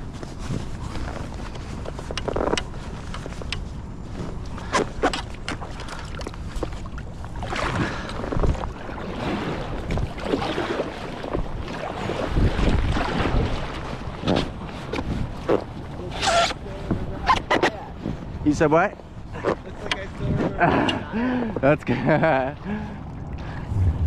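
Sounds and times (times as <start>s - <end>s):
wind rumbling on microphone: 0.0s - 16.0s, 23.0s - 24.0s
paddle strokes splashing water: 0.0s - 18.3s.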